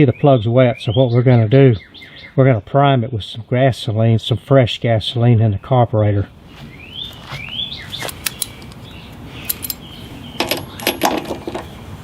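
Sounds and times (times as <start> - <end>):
metal tools clinking: 9.4 - 11.7.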